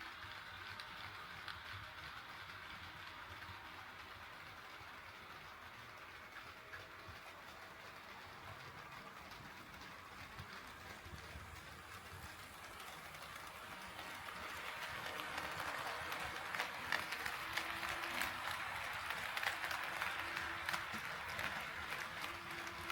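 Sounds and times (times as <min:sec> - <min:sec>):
model train running: 0:00.0 - 0:22.9
wheels clicking on rails: 0:00.0 - 0:22.9.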